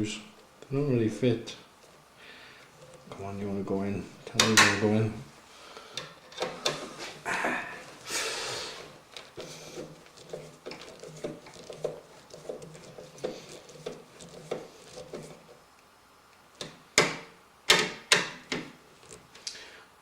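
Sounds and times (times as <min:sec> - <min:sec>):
handling and rustling: 0:07.8 - 0:15.7.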